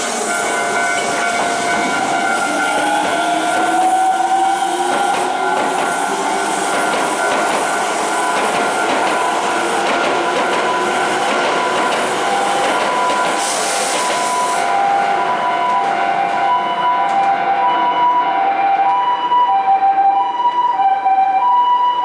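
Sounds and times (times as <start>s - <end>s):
train motor whine: 0.0s - 15.0s
train wheels on rails: 0.0s - 19.1s.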